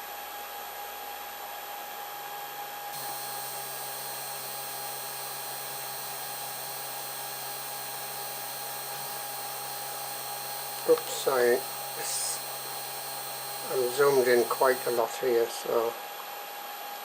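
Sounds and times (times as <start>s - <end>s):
printer motors and fans whining: 3.0s - 16.5s.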